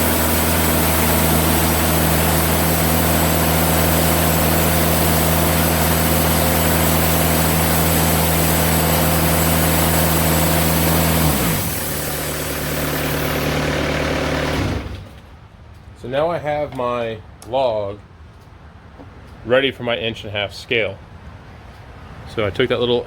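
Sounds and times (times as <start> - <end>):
band saw blade cutting wood: 0.0 - 15.2
engine hum: 0.0 - 19.5.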